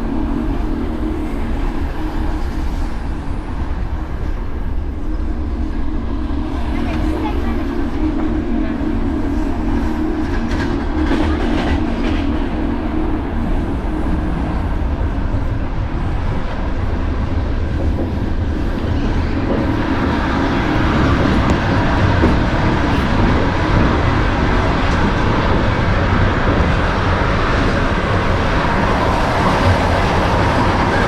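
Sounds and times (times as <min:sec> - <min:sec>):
train rumbling on rails: 0:00.0 - 0:31.0
short knocks: 0:20.7 - 0:25.2.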